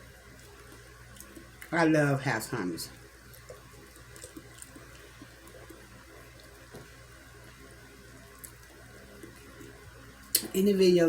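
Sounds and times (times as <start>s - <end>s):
steady low hum: 0.0s - 11.0s
faint chewing: 0.2s - 1.7s, 3.2s - 10.6s.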